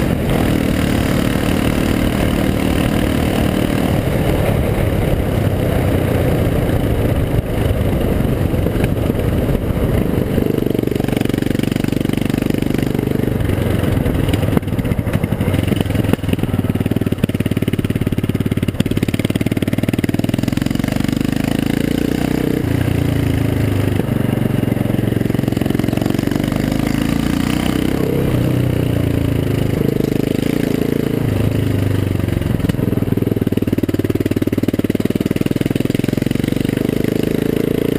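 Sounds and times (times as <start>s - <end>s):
motorcycle engine revving loudly: 0.0s - 37.9s.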